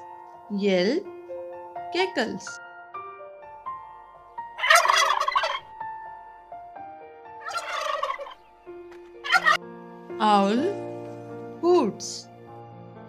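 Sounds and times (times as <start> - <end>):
turkey gobbling: 4.6 - 5.7, 7.4 - 8.5, 9.2 - 9.6.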